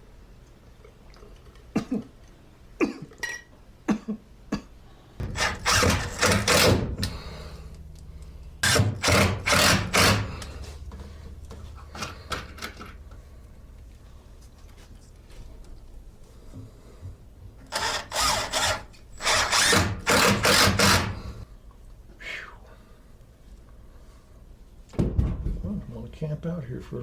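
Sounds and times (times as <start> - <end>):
person coughing harshly: 1.7 - 2.1, 2.8 - 3.2, 3.9 - 4.8.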